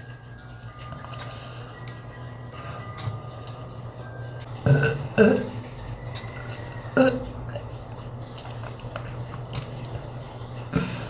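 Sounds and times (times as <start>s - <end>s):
person burping: 4.6s - 5.6s, 7.0s - 7.3s.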